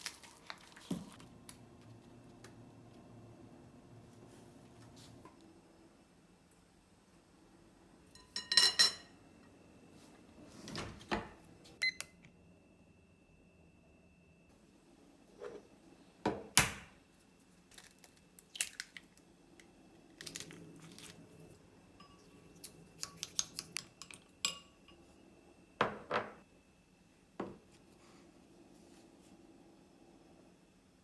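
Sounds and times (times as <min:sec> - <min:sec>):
dishes and utensils clinking: 0:08.1 - 0:09.1, 0:22.0 - 0:23.3.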